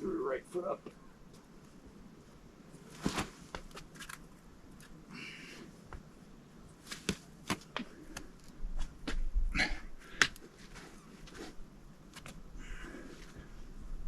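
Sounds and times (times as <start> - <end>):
climbing shoes tapping on rock: 6.9 - 9.3, 10.1 - 10.5.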